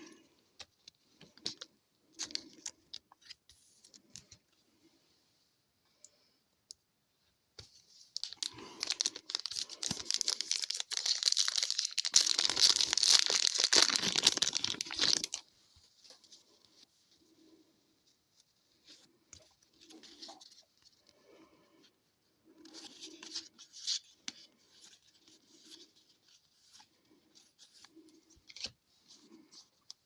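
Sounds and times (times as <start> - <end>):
card pack wrapper tearing and crinkling: 8.2 - 15.4.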